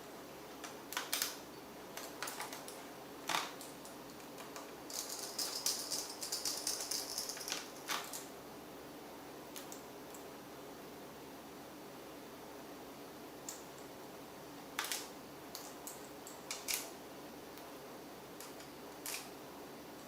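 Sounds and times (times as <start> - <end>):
rapid high-pitched clicking and rattling: 2.0 - 8.3.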